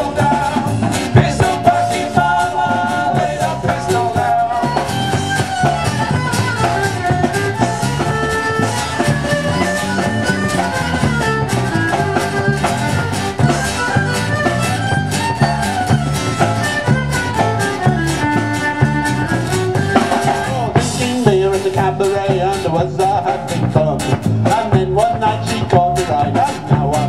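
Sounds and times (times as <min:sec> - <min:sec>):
country band beat: 0:00.0 - 0:27.0
fiddle melody: 0:01.4 - 0:21.5.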